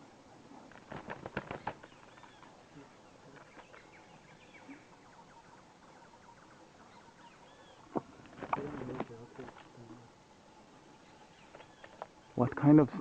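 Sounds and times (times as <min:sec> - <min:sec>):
small birds chirping: 0:00.0 - 0:13.0.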